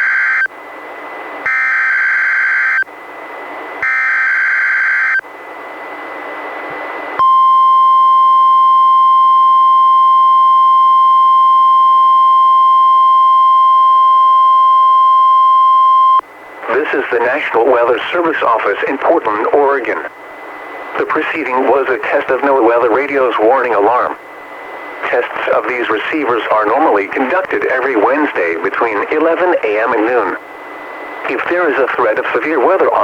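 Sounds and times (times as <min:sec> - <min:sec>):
steady warning alarm tone: 0:00.0 - 0:33.0
radio hiss: 0:16.5 - 0:33.0.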